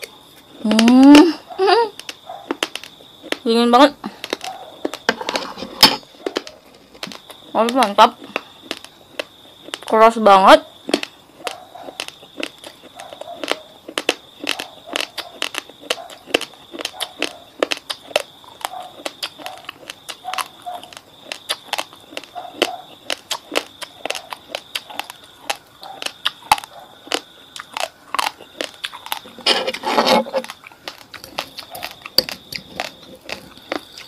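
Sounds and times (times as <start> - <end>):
uncooked rice crunched between teeth: 2.0 - 3.4, 6.2 - 7.5, 8.2 - 9.9, 10.9 - 29.8, 30.4 - 34.0.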